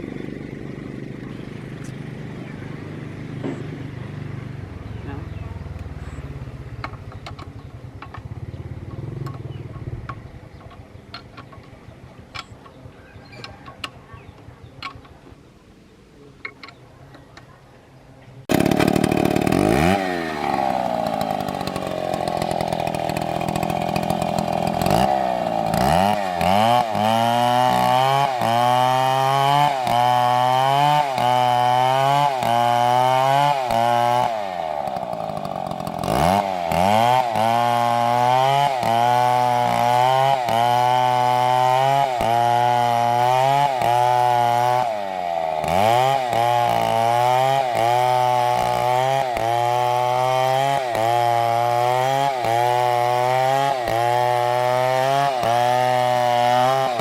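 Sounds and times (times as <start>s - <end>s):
chainsaw engine revving: 0.0s - 9.7s, 18.5s - 57.0s.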